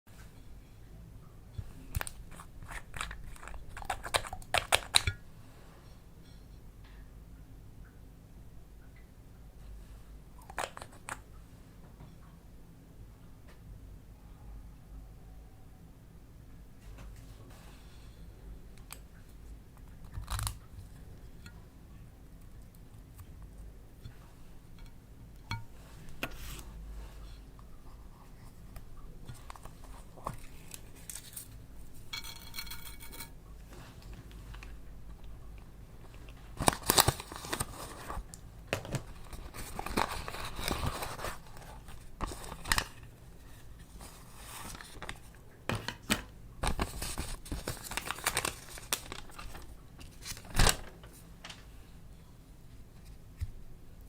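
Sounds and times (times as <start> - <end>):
tearing and crinkling: 36.6 - 38.3, 38.9 - 43.0, 46.6 - 50.9.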